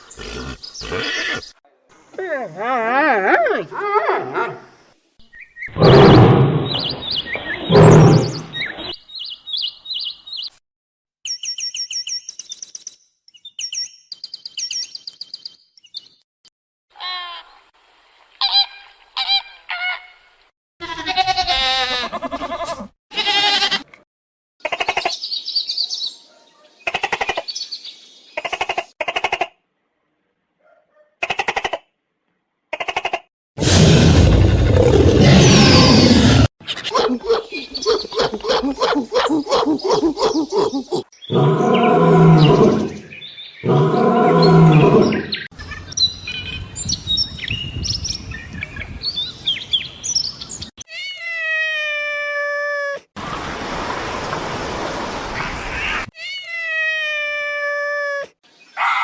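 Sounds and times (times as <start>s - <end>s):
loud noisy animal call: 5.7s - 7.0s, 7.6s - 8.4s, 33.6s - 36.5s
bleat-like calls: 20.8s - 23.9s.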